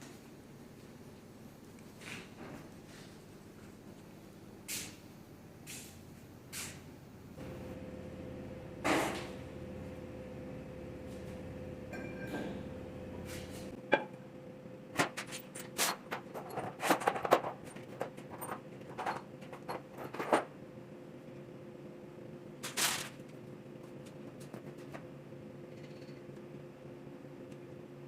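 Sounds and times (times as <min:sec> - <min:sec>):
steady hum: 0:00.0 - 0:19.1.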